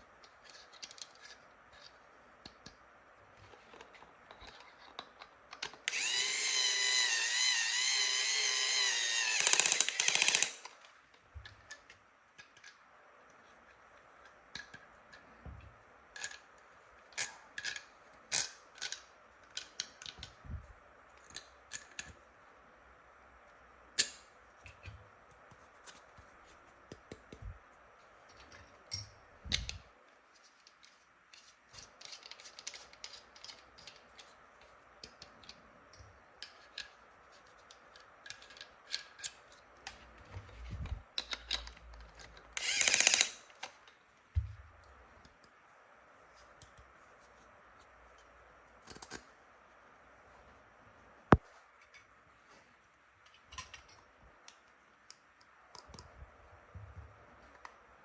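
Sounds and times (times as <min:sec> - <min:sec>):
toy power tool whir: 0:05.9 - 0:10.7, 0:42.5 - 0:43.5
plastic toy pieces clicking: 0:09.0 - 0:10.8, 0:42.4 - 0:43.8.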